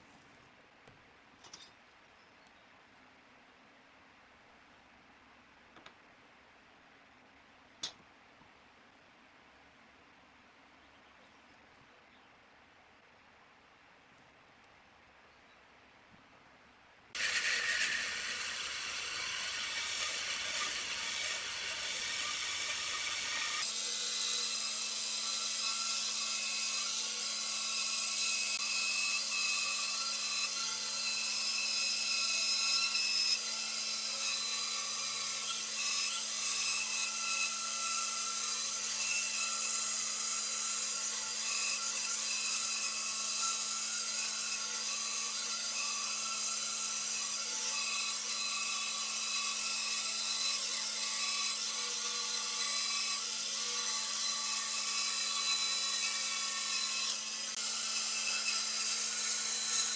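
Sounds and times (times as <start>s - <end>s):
power tool motor hum: 17.2s - 50.9s.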